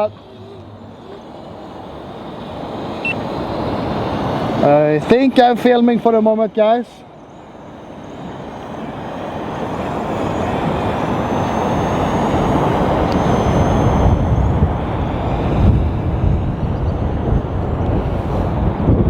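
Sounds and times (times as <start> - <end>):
drone motors whining: 0.0 - 19.0
wind buffeting microphone: 7.1 - 19.0.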